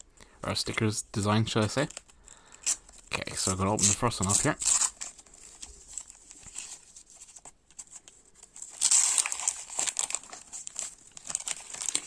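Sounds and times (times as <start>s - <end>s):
wrapper tearing and crinkling: 1.7s - 7.4s, 8.5s - 12.0s.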